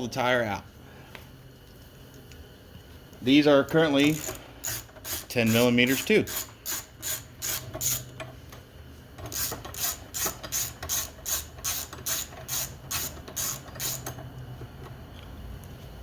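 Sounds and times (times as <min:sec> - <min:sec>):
ratchet wrench clicking: 0:04.0 - 0:08.3, 0:09.2 - 0:14.2.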